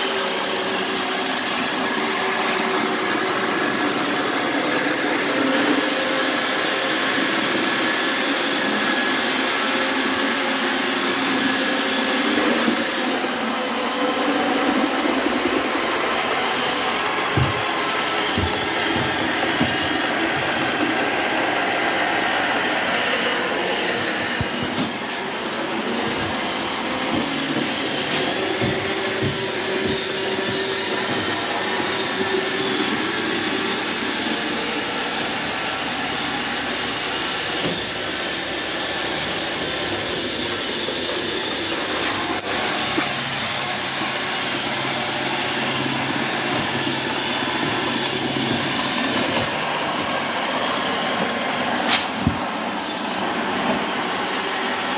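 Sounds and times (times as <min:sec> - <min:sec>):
robot vacuum whirring: 0:00.0 - 0:54.9.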